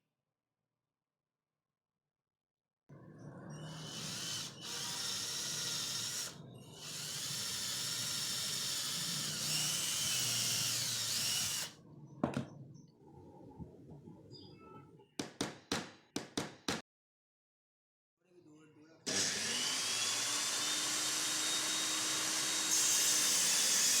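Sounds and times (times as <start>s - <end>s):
small electric motor whining: 3.6s - 11.8s, 19.1s - 24.0s.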